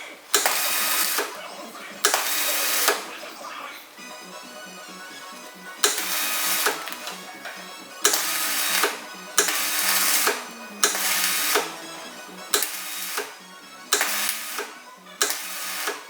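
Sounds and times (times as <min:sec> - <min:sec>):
welding arc crackling hiss: 0:00.0 - 0:03.5, 0:05.8 - 0:16.0
background music: 0:00.0 - 0:16.0.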